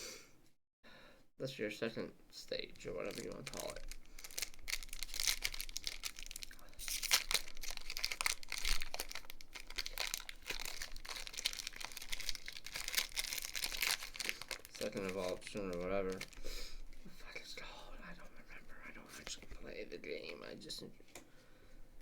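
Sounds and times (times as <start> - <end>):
foil wrapper crinkling: 2.8 - 17.0.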